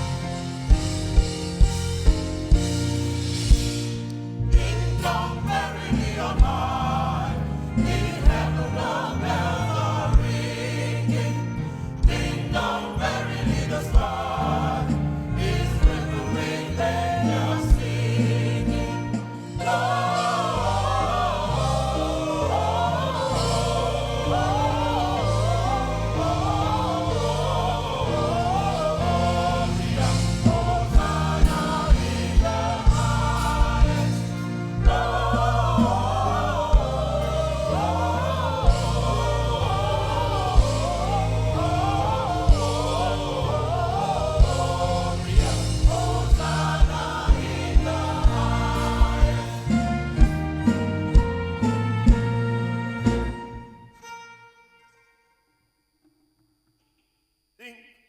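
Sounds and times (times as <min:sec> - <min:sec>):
drum hits: 0:00.0 - 0:06.8, 0:29.0 - 0:39.8, 0:44.0 - 0:52.4
gospel choir singing: 0:00.0 - 0:54.0
band accompaniment: 0:00.0 - 0:54.2.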